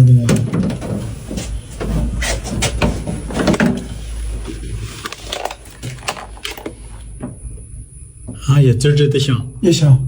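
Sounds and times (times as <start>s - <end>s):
knocks and clicks of handling: 0.2s - 7.5s.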